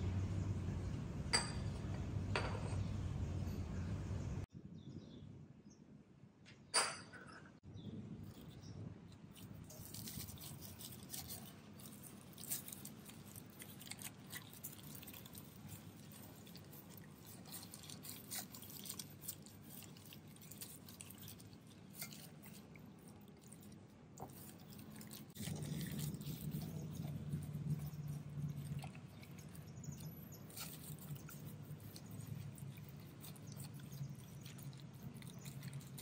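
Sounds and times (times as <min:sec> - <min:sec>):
wet squishing of food mixing: 0:09.3 - 0:36.0.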